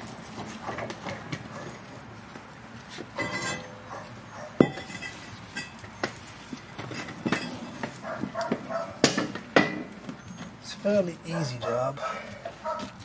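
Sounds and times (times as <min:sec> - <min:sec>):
metal hand tools clinking: 0:03.2 - 0:03.8.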